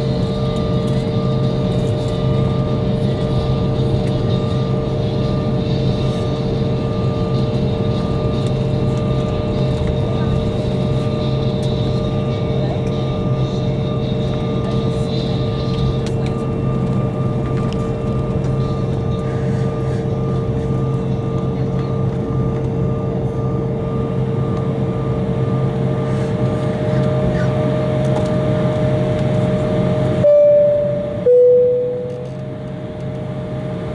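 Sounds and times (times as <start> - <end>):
steady whining tones: 0.0 - 33.9
aircraft cabin hum: 24.5 - 33.9
two-note descending cabin chime: 30.2 - 32.4.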